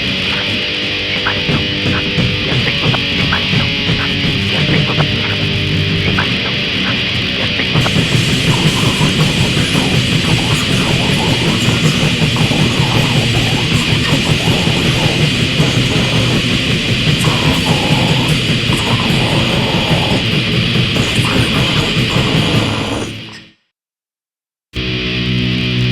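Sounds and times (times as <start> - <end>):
fast pulsing drums: 0.0 - 23.3
distorted electric guitar riffing: 0.0 - 23.5, 24.8 - 25.9.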